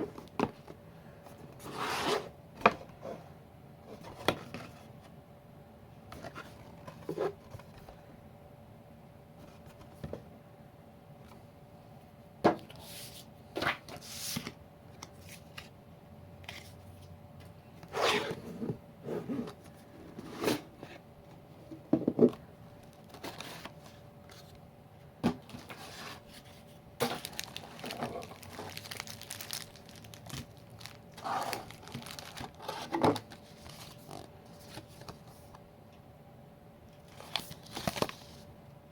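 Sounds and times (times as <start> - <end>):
packaging tearing and crinkling: 27.0 - 34.0, 37.1 - 38.3.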